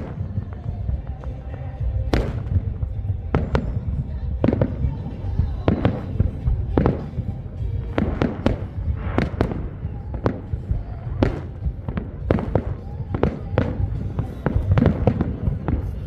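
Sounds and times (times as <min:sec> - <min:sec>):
fireworks sharp bangs: 0:00.0 - 0:16.0
low rumble of fireworks: 0:00.0 - 0:16.0.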